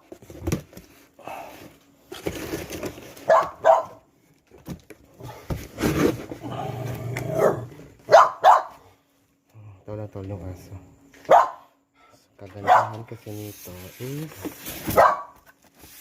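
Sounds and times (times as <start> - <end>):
dog barking: 3.3 - 4.0, 7.4 - 8.8, 11.3 - 11.8, 12.6 - 13.1, 14.9 - 15.4
rustling noise: 13.2 - 16.0.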